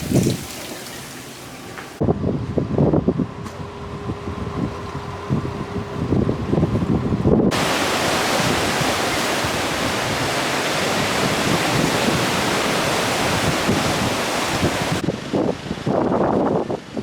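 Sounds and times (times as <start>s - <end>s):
sea surf rushing: 0.0s - 2.0s, 7.5s - 17.0s.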